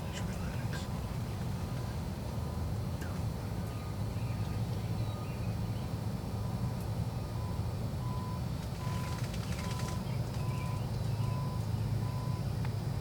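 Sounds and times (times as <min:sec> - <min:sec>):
low engine rumble: 0:00.0 - 0:13.0
reversing alarm beeps: 0:06.4 - 0:09.0, 0:11.2 - 0:12.5.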